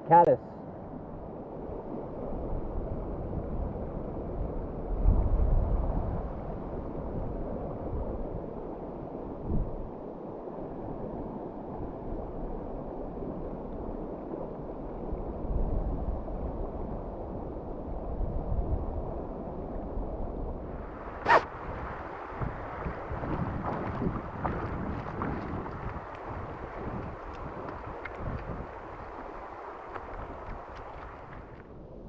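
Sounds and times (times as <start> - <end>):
wind buffeting microphone: 17.8 - 32.0
river water rushing: 20.8 - 31.6
sharp snap: 21.2 - 21.5.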